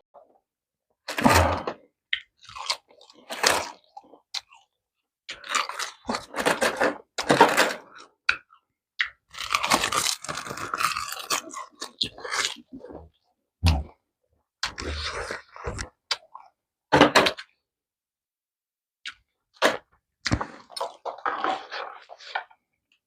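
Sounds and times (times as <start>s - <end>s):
open-mouthed chewing: 2.1s - 6.3s, 7.9s - 14.0s, 14.6s - 16.5s.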